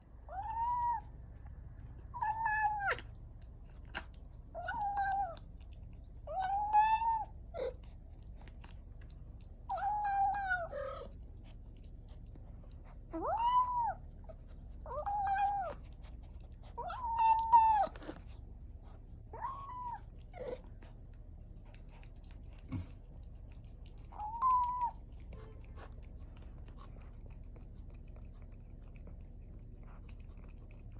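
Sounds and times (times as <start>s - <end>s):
kitten chewing clicks: 1.3s - 6.3s, 7.3s - 13.2s, 14.0s - 30.9s
kitten mewing: 2.2s - 3.1s, 4.0s - 5.4s, 9.7s - 11.2s, 13.1s - 14.0s, 14.9s - 16.0s, 16.7s - 18.3s, 24.1s - 25.9s.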